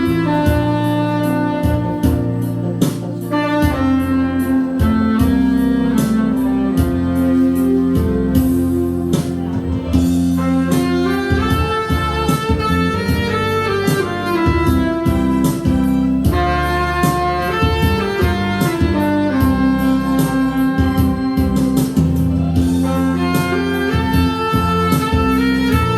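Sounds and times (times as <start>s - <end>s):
band with drums and strings: 0.0s - 25.9s
saxophone playing slow melody: 0.0s - 25.9s.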